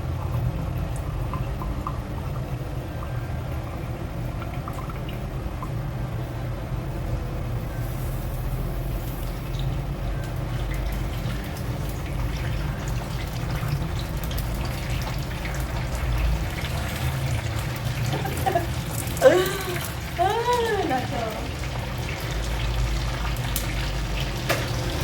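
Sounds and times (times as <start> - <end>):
tap water running and splashing: 8.8 - 25.0.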